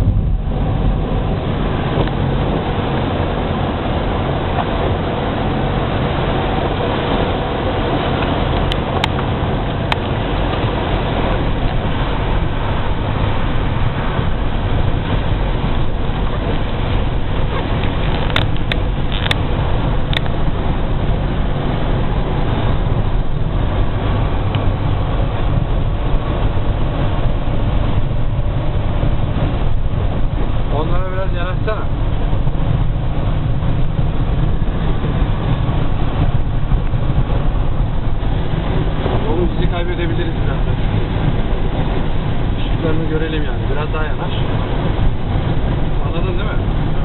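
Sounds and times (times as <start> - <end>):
truck engine and road rumble: 0.0 - 47.0.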